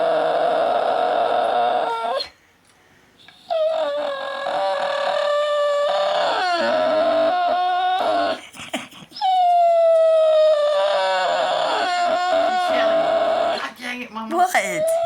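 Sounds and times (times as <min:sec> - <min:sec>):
dog whining howls: 0:00.0 - 0:02.4, 0:03.5 - 0:08.4, 0:09.2 - 0:13.7, 0:14.7 - 0:15.0.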